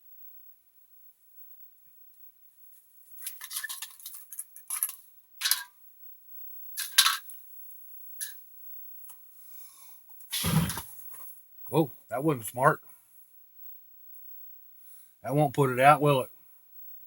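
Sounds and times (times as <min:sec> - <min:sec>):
metal parts clinking and scraping: 0:03.2 - 0:05.7, 0:06.8 - 0:07.4.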